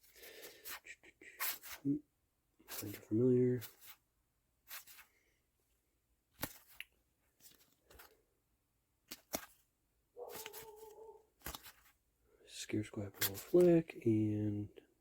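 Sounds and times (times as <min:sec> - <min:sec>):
dog whining: 0:10.2 - 0:11.3
foil wrappers crinkling and tearing: 0:10.2 - 0:11.9.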